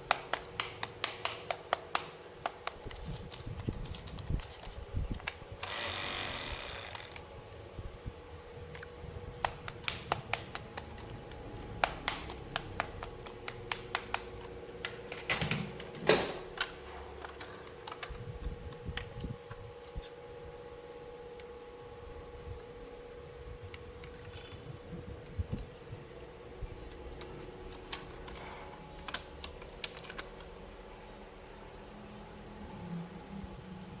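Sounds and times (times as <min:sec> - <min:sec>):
faint steady hum: 0:00.0 - 0:34.0
packaging rustling: 0:02.7 - 0:05.8.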